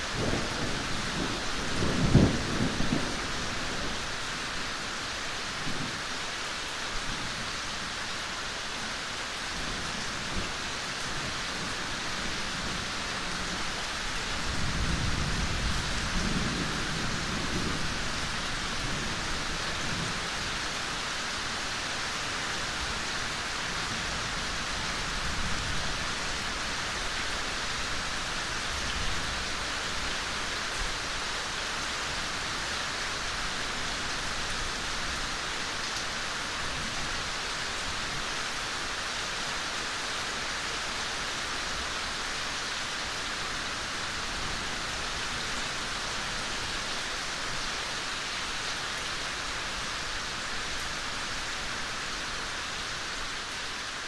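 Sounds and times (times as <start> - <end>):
rain falling on foliage: 0.0 - 54.0.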